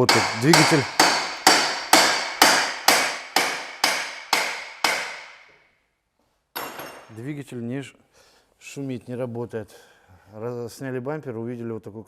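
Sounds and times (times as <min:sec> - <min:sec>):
hammer blows on metal: 0:00.0 - 0:05.5.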